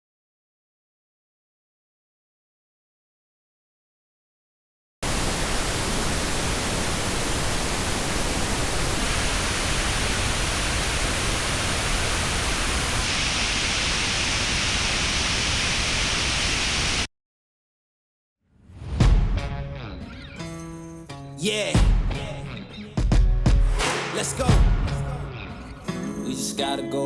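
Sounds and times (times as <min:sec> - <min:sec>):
pink noise hiss: 0:05.0 - 0:17.1.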